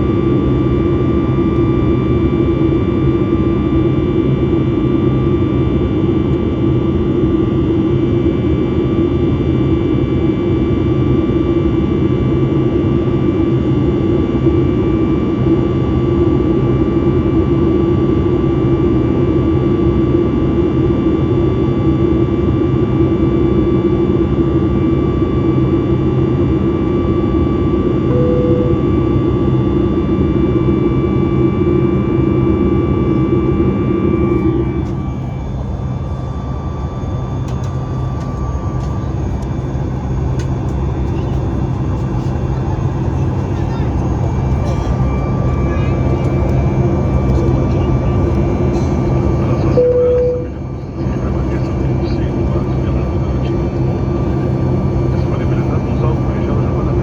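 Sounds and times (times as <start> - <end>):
jet engine drone and airflow: 0.0 - 57.0
thin high whine: 28.1 - 29.3, 34.2 - 57.0.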